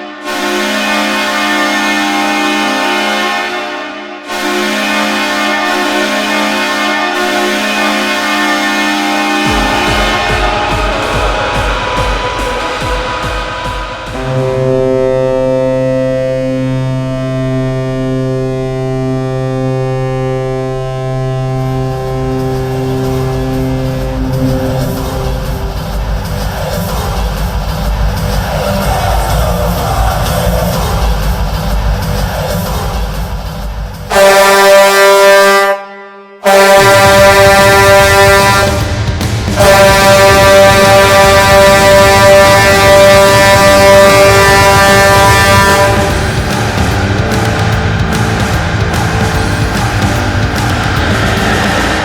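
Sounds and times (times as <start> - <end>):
deep goal horn blast: 0.0 - 31.3, 34.1 - 52.0
music: 0.1 - 35.0, 36.5 - 52.0.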